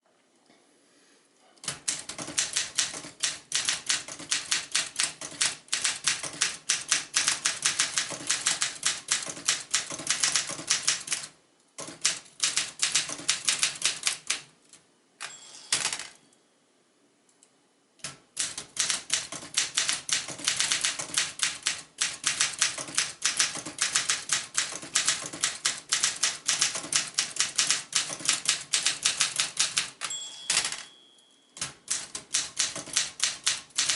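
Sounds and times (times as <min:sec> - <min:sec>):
typewriter keystroke clacks: 0:01.6 - 0:14.5, 0:18.0 - 0:30.8, 0:31.6 - 0:33.9
typewriter bell ring: 0:15.2 - 0:16.4, 0:29.8 - 0:33.9.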